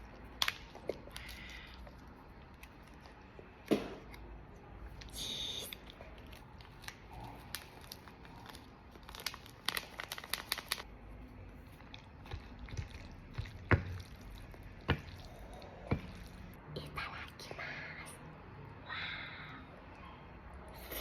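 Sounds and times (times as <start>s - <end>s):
plastic packaging crinkling and tearing: 5.0s - 10.9s.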